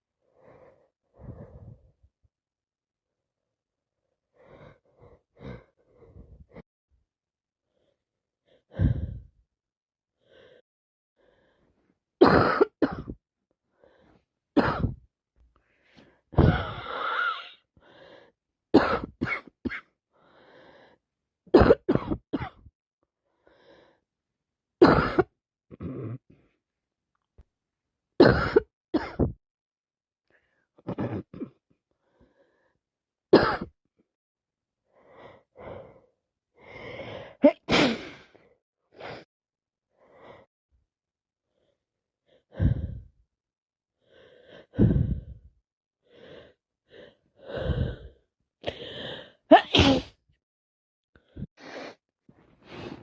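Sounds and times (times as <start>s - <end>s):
gasping in-breaths: 15.6s - 18.4s, 41.5s - 43.1s, 44.0s - 49.4s
person sneezing: 37.5s - 38.2s, 49.5s - 50.2s.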